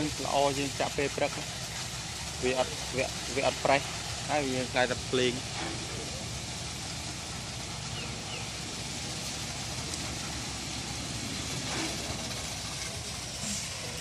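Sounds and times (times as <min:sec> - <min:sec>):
engine running: 0:00.0 - 0:14.0.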